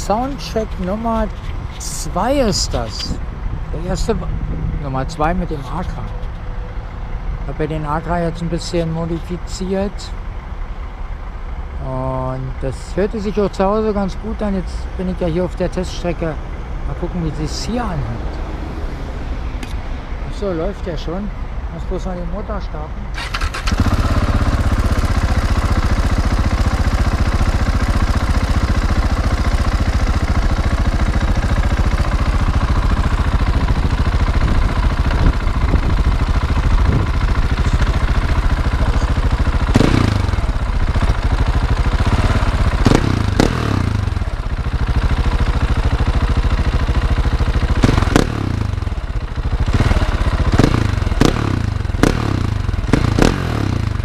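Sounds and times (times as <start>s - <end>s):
motorcycle engine idling and revving: 0.0s - 54.0s.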